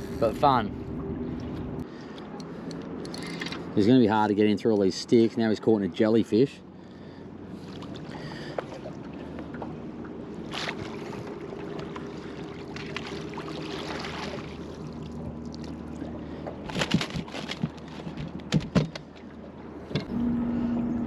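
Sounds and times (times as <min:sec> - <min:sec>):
low hum: 0:00.0 - 0:05.0, 0:06.6 - 0:21.0
water around boat: 0:00.0 - 0:21.0
fish splashing: 0:10.4 - 0:18.2
knocks on boat: 0:16.7 - 0:19.0.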